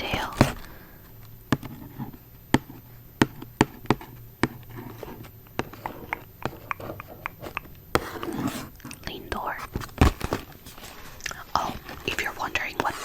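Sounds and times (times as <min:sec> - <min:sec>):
clicks and taps on packaging: 0:05.6 - 0:08.1.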